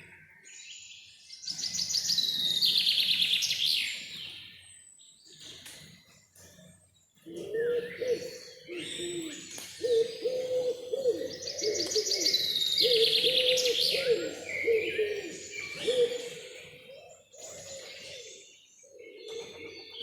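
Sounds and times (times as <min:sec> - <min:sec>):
songbird chirps and trills: 0:00.0 - 0:20.0
low bird calls: 0:07.2 - 0:20.0.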